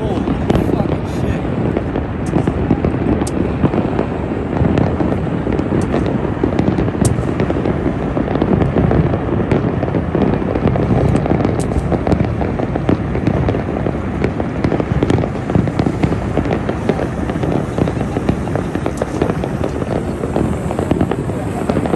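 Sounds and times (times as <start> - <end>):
fireworks barrage: 0.0 - 21.9.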